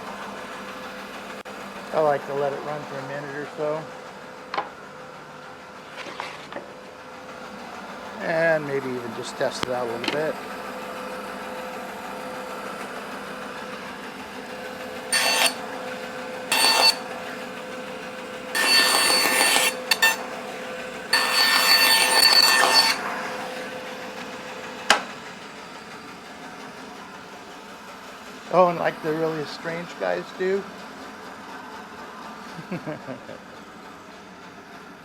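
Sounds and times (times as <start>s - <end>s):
band saw humming: 0.0s - 27.0s
saw cutting wood: 8.1s - 25.2s.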